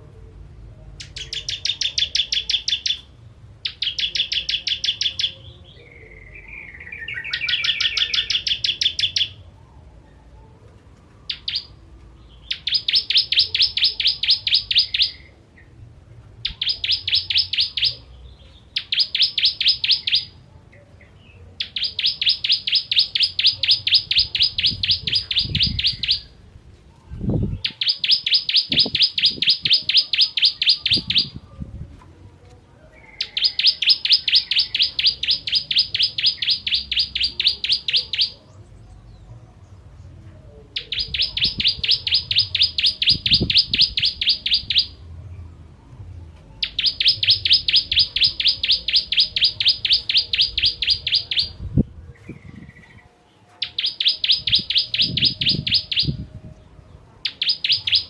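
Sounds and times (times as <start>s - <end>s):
bird singing sharp repeated notes: 1.0s - 9.6s, 11.3s - 15.8s, 16.4s - 26.5s, 27.2s - 31.6s, 33.0s - 39.3s, 40.7s - 58.0s.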